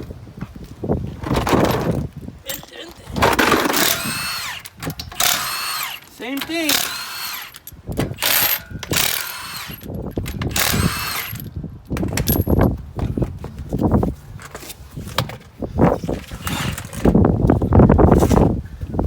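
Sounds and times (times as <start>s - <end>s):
parts clanking and knocking: 1.2s - 17.7s
impact wrench whining: 3.2s - 12.5s.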